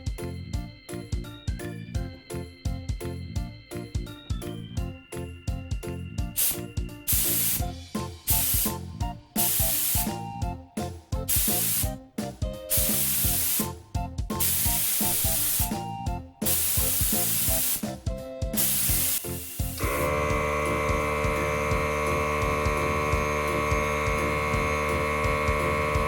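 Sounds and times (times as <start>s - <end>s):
background music: 0.0s - 26.0s
compressed air blasts from hose: 6.4s - 10.4s, 11.2s - 12.0s, 12.6s - 26.0s.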